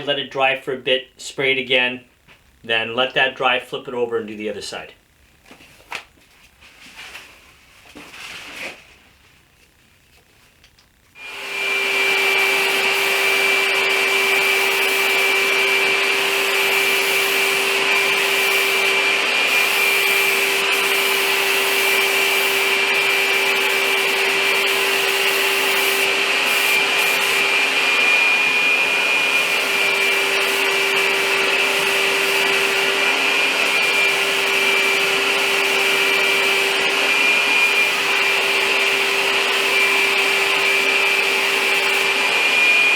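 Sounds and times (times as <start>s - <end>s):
paint sprayer hissing and whining: 11.2s - 42.9s.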